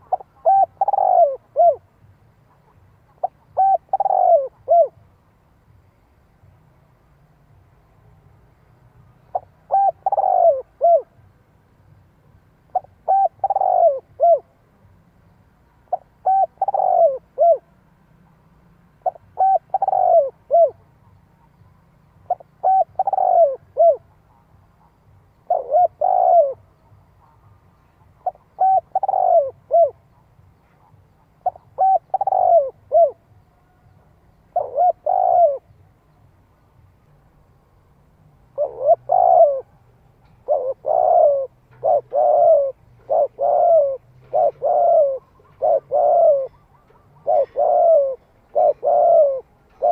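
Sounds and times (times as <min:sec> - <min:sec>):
dove cooing: 0:00.0 - 0:05.1, 0:09.2 - 0:11.3, 0:12.6 - 0:14.6, 0:15.9 - 0:17.8, 0:19.0 - 0:33.9, 0:34.5 - 0:35.8, 0:38.5 - 0:49.9.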